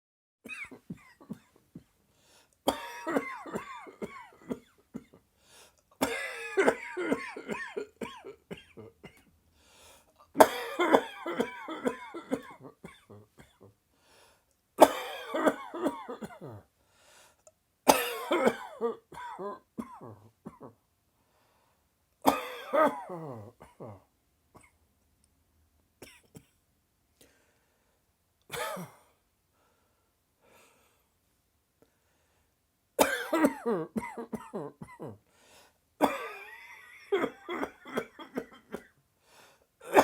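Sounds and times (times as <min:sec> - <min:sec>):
person coughing: 0:00.5 - 0:01.9, 0:02.7 - 0:05.2, 0:06.0 - 0:09.3, 0:10.4 - 0:13.7, 0:14.8 - 0:16.6, 0:17.9 - 0:20.8, 0:22.3 - 0:24.0, 0:28.5 - 0:29.1, 0:33.0 - 0:35.2, 0:36.0 - 0:39.0.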